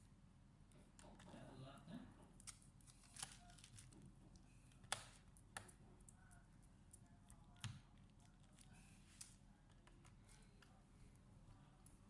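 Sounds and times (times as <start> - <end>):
small sharp clicks and taps: 4.7 - 6.2.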